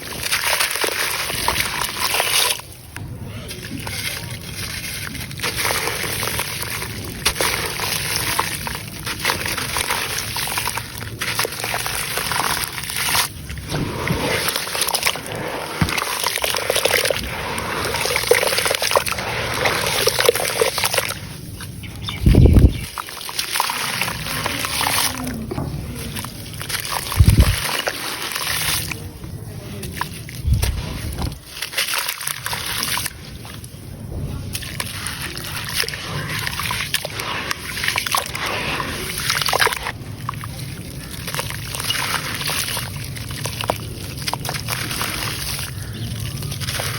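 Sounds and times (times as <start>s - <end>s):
sand-cement crumbling into water: 0.0s - 21.2s.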